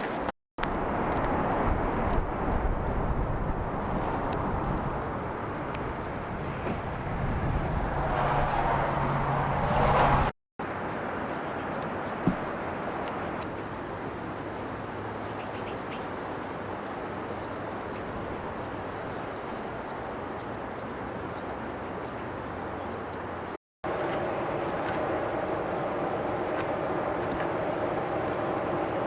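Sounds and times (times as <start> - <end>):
small birds chirping: 10.6 - 25.6.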